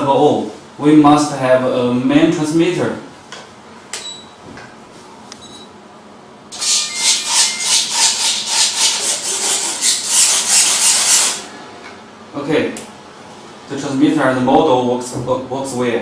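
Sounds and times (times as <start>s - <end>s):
servos buzzing: 6.5s - 11.4s.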